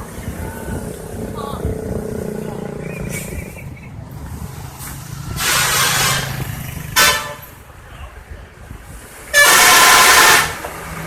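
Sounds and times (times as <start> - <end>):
multi-tone air horns: 5.4 - 7.5, 9.3 - 10.7.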